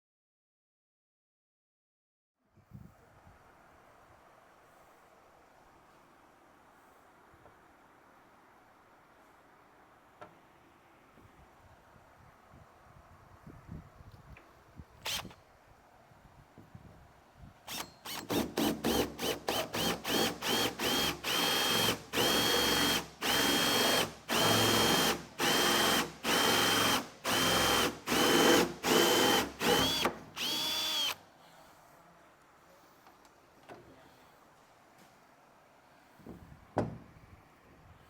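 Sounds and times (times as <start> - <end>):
power drill whining in bursts: 15.0 - 15.4, 17.7 - 31.2.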